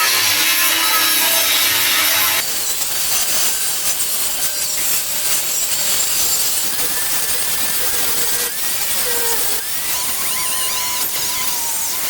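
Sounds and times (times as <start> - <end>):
power tool motor tone: 0.0 - 2.4, 7.1 - 12.0
power tool cutting bolts: 0.0 - 12.0.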